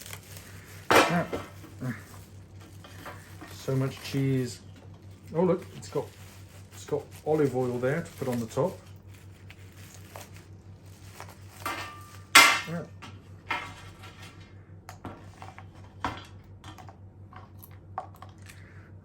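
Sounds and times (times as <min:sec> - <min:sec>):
kitchenware clatter: 0:00.9 - 0:01.8, 0:11.6 - 0:14.4
dishes and metal clinking: 0:11.6 - 0:14.4.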